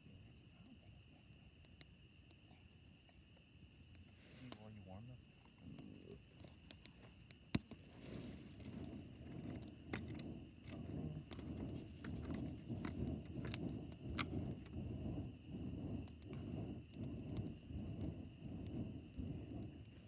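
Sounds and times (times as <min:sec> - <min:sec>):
campfire crackling and popping: 0:01.3 - 0:02.4, 0:03.7 - 0:20.0
low rumble: 0:07.9 - 0:20.0.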